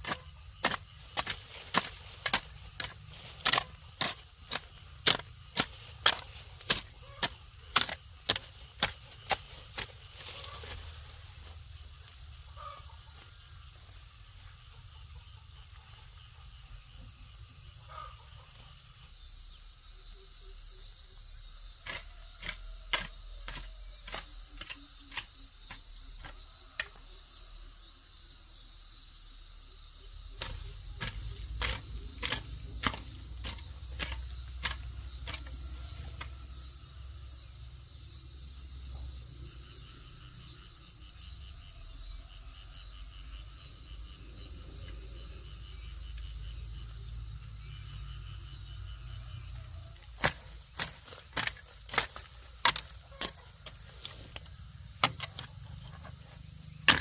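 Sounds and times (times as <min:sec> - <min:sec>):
hand tool chopping strikes: 0:00.0 - 0:10.0, 0:30.4 - 0:35.5, 0:50.2 - 0:56.0, 0:56.8 - 0:57.0.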